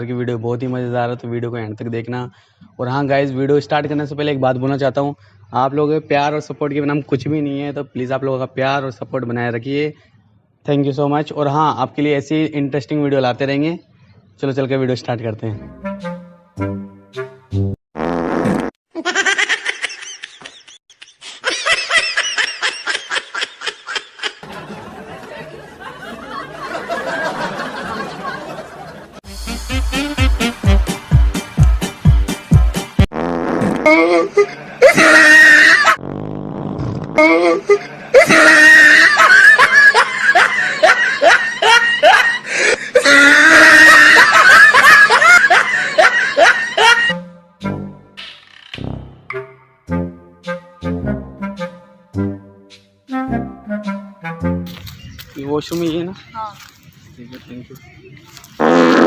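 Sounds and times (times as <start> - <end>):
high-pitched laughing: 18.9 - 24.5, 33.9 - 36.0, 37.2 - 47.2.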